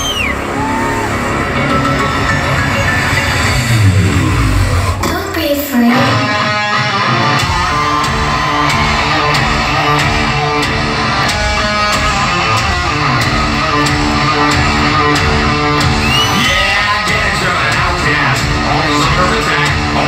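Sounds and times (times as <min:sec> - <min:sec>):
electric guitars: 0:05.8 - 0:20.0
steady drum beat: 0:07.2 - 0:20.0.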